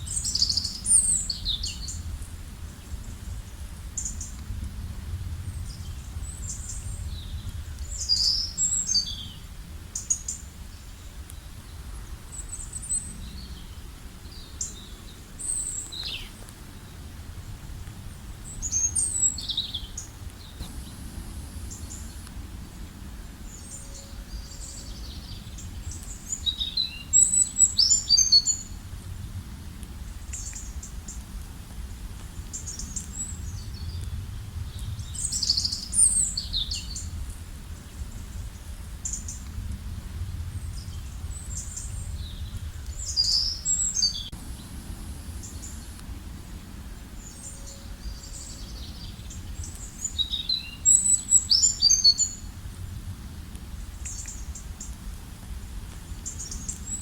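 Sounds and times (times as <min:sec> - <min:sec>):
songbirds chirping and trilling: 0:00.0 - 0:04.6, 0:05.2 - 0:28.8, 0:40.4 - 0:53.0, 0:55.9 - 0:57.0
low steady rumble: 0:00.0 - 0:50.2.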